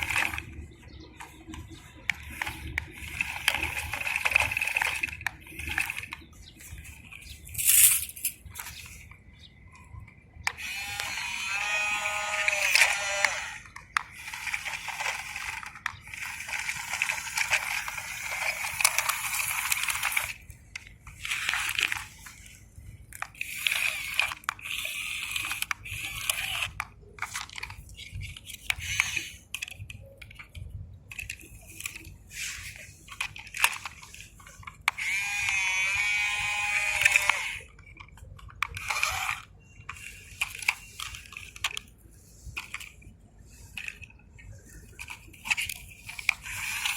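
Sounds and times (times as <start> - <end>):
small motor and pump whine: 0.0 - 46.9
gritty crunching: 7.5 - 8.8.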